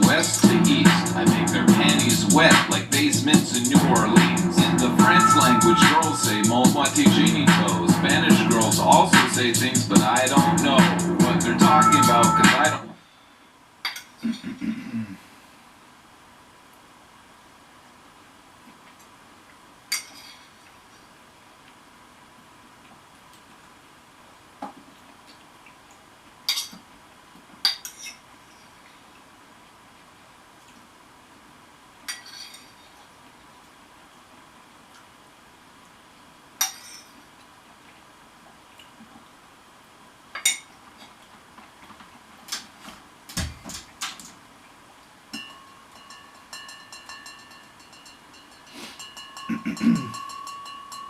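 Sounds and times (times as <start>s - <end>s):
rapid ticking: 0.0s - 12.6s
steady high tone: 0.0s - 12.9s
dishes clinking and knocking: 45.3s - 51.0s.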